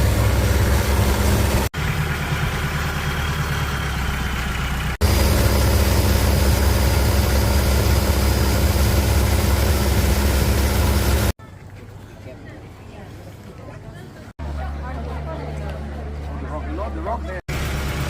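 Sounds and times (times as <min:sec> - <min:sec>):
boat engine droning: 0:00.0 - 0:11.4.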